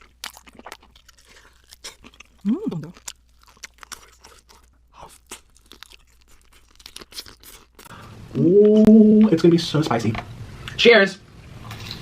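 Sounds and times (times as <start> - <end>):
crunching and chewing food: 0.0 - 8.0.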